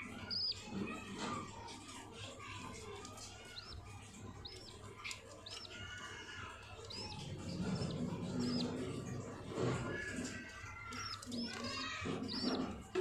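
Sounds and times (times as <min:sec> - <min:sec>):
soft warbling chatter: 0:00.0 - 0:13.0
budgerigars chirping: 0:02.8 - 0:12.8.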